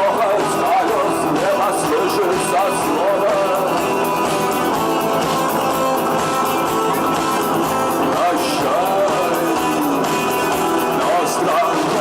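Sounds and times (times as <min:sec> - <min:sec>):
person singing: 0:00.0 - 0:06.0, 0:06.9 - 0:12.0
rock music with guitars: 0:00.0 - 0:12.0.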